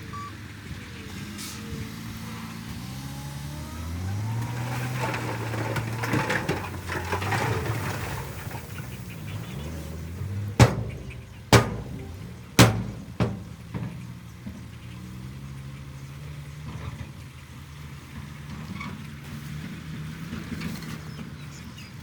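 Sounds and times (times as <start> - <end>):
loud sharp bangs: 10.6 - 14.2.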